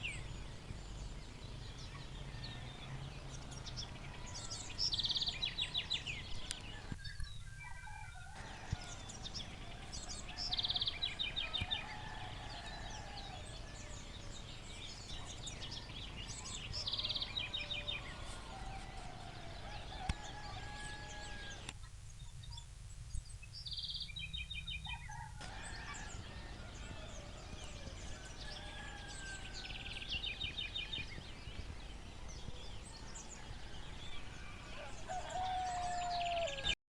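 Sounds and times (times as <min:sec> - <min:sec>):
bird calls: 0:00.0 - 0:36.8
distant domestic fowl: 0:33.2 - 0:36.7.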